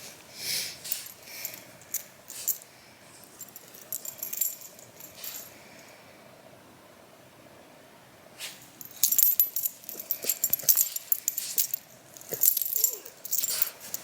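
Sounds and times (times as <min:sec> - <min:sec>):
dog collar tags jingling: 0:00.8 - 0:05.6, 0:08.6 - 0:14.0.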